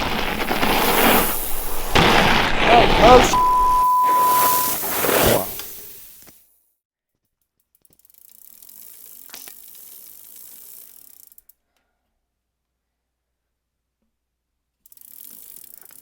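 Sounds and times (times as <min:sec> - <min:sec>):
bicycle freehub ticking: 0:08.0 - 0:11.4, 0:14.9 - 0:16.0.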